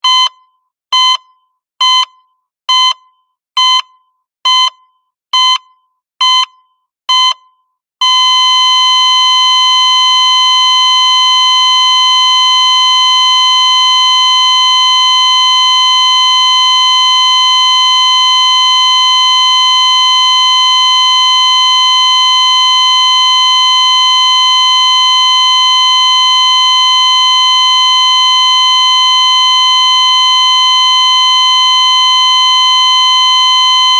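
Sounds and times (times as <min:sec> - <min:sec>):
heart monitor beeping: 0:00.0 - 0:19.4.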